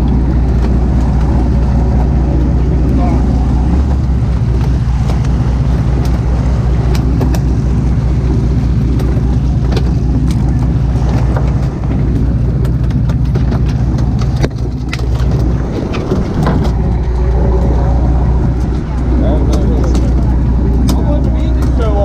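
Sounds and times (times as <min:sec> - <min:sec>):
boat engine droning: 0:00.0 - 0:22.0.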